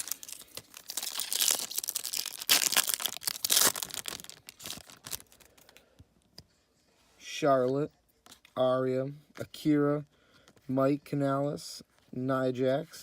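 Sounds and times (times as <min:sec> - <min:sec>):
wrapper tearing: 0:00.0 - 0:05.6
wrapper crinkling: 0:00.0 - 0:05.8.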